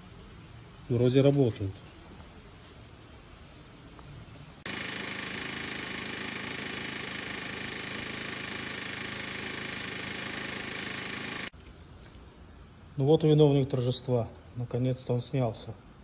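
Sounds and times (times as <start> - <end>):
power tool running with whine: 4.7 - 11.5.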